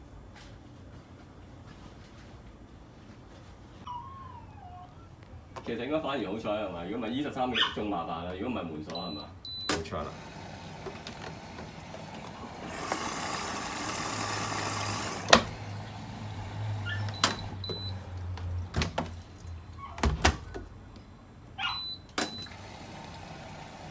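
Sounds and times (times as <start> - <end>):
washing machine hiss: 9.7 - 17.6, 22.4 - 23.9.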